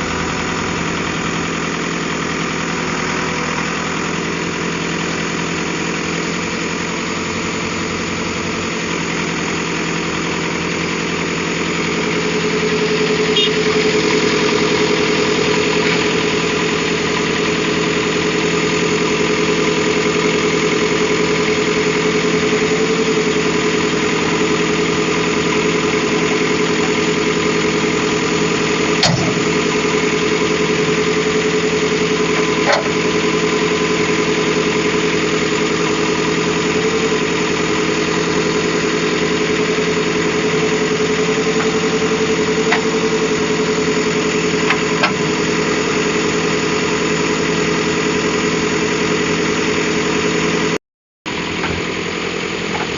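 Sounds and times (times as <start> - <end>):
diesel engine running: 0.0 - 52.9.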